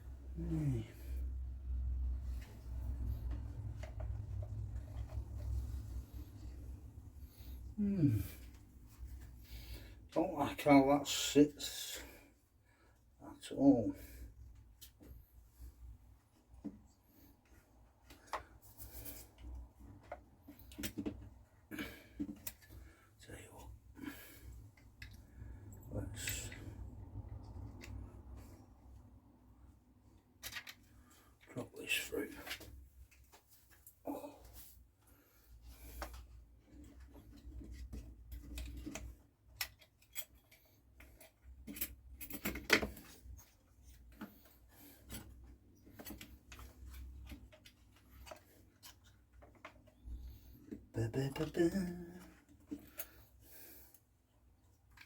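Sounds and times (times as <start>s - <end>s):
tools and parts clicking: 30.4s - 30.9s, 37.7s - 43.5s.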